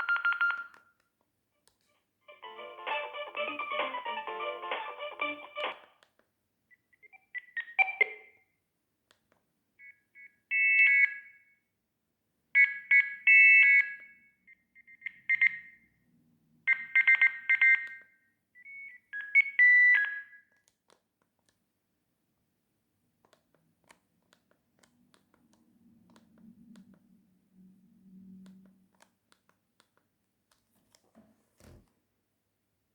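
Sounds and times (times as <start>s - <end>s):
melodic ringtone: 2.3s - 5.8s.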